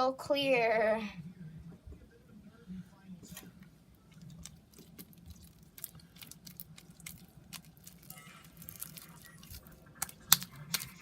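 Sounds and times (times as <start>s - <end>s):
slime slaps: 8.7s - 11.0s
slime sticky clicks and pops: 10.0s - 10.9s.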